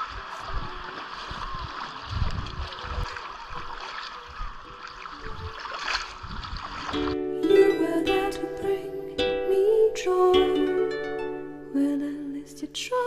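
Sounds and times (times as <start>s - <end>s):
plucked-string background music: 4.2s - 13.0s.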